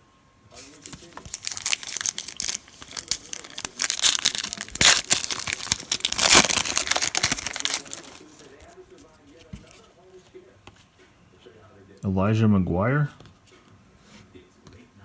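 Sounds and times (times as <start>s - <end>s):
foil wrapper crinkling and tearing: 0.6s - 8.8s.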